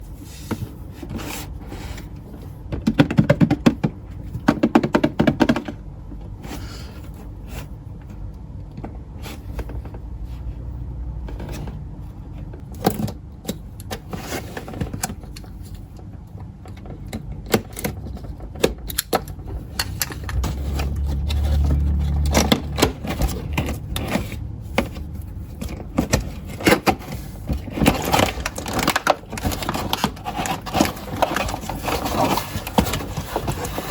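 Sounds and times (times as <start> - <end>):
low hum: 19.3 - 26.7.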